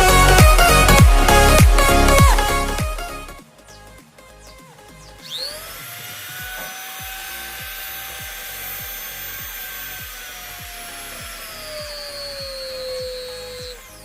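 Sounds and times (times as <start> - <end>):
electronic music with beat: 0.0 - 14.0
die grinder whining: 5.3 - 14.0.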